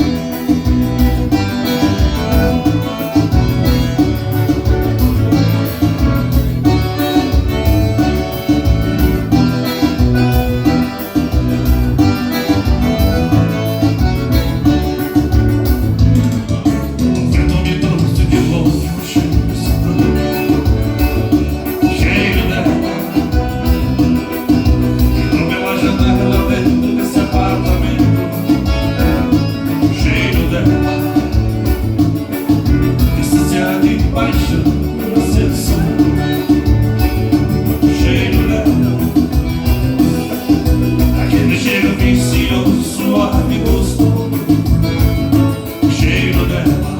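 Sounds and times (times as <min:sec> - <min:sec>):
guitar: 0:00.0 - 0:46.9
live dance band playing: 0:00.0 - 0:46.9
person singing: 0:16.2 - 0:46.9.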